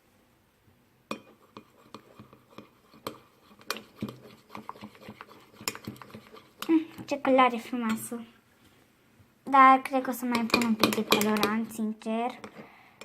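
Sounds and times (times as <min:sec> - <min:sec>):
spoon clinking and scraping bowl: 0:01.1 - 0:07.1, 0:10.3 - 0:12.6.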